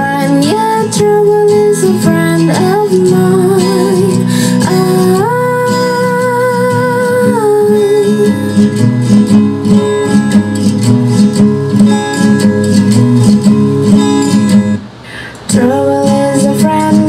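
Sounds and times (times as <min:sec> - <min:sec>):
pop song through loudspeaker: 0:15.2 - 0:17.0.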